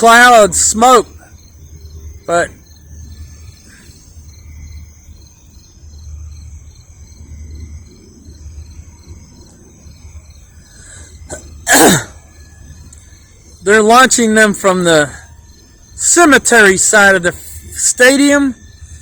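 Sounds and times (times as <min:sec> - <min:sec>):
low steady rumble: 0:00.0 - 0:17.8
crickets chirping: 0:00.0 - 0:19.0
person sneezing: 0:11.3 - 0:12.2.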